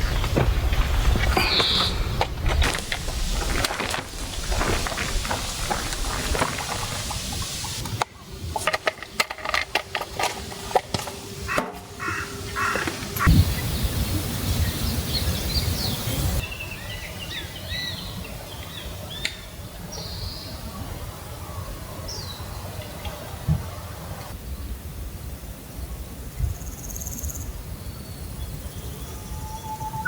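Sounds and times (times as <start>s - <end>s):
small birds chirping: 0.0s - 7.8s
rustling noise: 0.0s - 11.4s
outdoor background noise: 0.0s - 30.0s.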